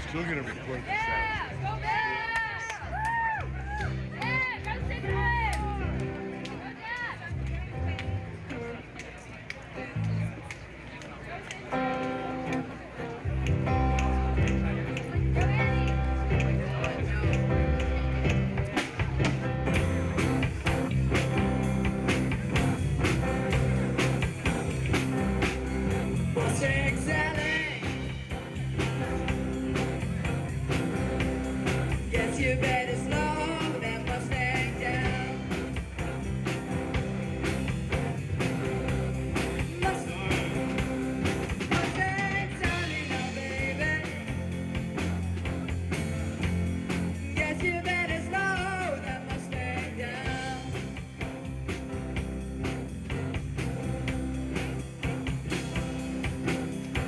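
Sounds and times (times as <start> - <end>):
rock band playing live: 11.7 - 57.0
drum beat: 13.4 - 57.0
person singing: 26.2 - 28.2, 31.6 - 36.4, 39.4 - 44.6, 47.0 - 51.1.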